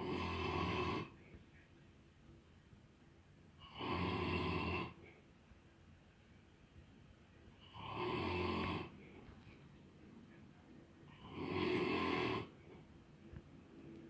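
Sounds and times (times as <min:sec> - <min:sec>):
man snoring: 0:00.0 - 0:01.1, 0:03.6 - 0:05.0, 0:07.8 - 0:08.9, 0:11.2 - 0:12.5
quiet breathing: 0:00.0 - 0:01.8, 0:03.5 - 0:05.5, 0:07.4 - 0:14.0.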